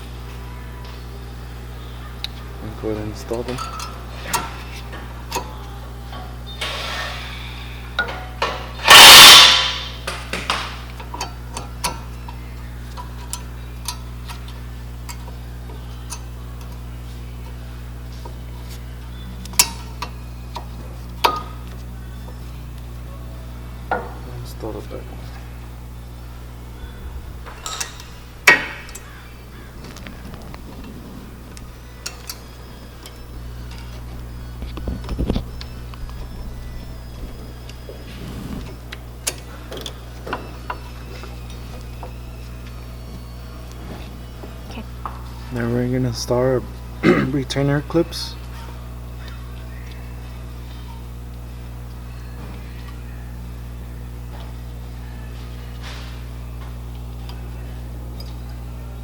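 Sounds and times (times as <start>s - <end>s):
metal brake parts clinking: 3.4s - 5.5s, 27.5s - 29.2s
rush of metallic noise: 6.6s - 10.0s.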